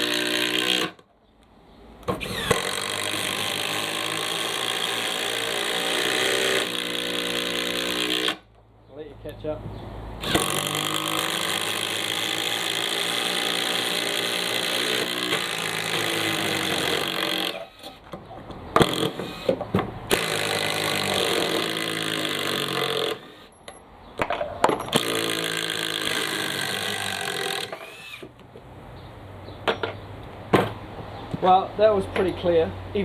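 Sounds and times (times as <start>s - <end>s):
impact drivers driving screws: 0.0s - 1.1s, 2.0s - 8.4s, 10.2s - 23.6s, 24.2s - 28.4s.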